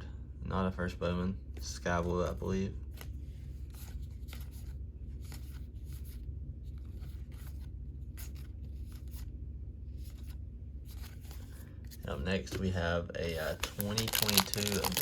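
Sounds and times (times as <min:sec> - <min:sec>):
low hum: 0:00.0 - 0:15.0
cards swishing and rubbing: 0:02.0 - 0:09.3, 0:09.9 - 0:12.6.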